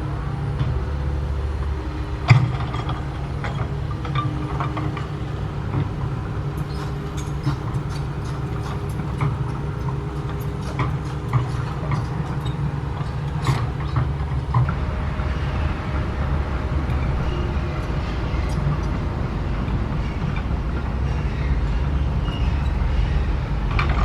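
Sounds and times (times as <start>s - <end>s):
excavator diesel engine: 0.0s - 24.0s
sharp knocks and clanks: 2.3s - 14.9s.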